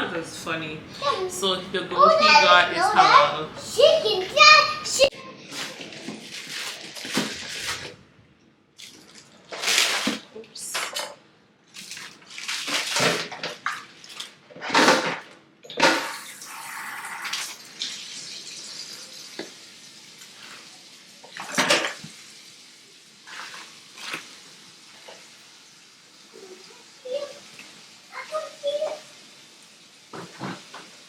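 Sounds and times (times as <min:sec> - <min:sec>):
dishes and pots clattering: 0:21.3 - 0:22.1.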